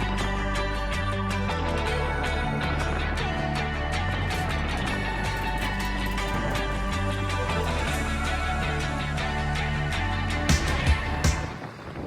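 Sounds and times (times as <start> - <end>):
background music: 0.0 - 12.0
drum hits: 10.5 - 11.5.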